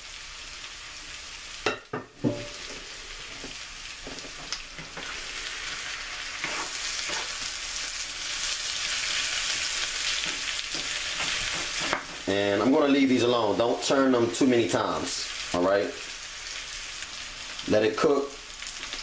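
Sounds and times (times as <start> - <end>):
vegetables sizzling in oil: 0.0 - 19.0
utensil knocking on pan: 1.7 - 2.5
stirring scrapes: 6.2 - 7.6, 10.2 - 12.3.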